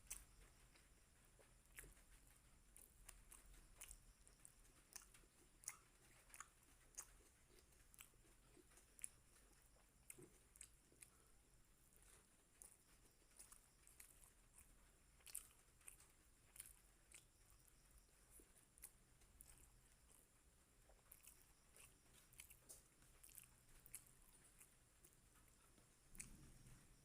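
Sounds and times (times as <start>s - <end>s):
close-up chewing of food: 0.0s - 27.0s.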